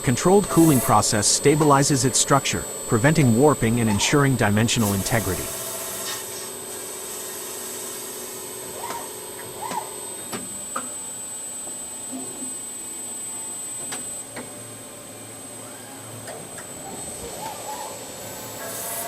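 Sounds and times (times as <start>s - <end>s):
low machinery hum: 0.0s - 7.1s
machinery hiss with high whine: 0.0s - 9.5s, 18.1s - 19.0s.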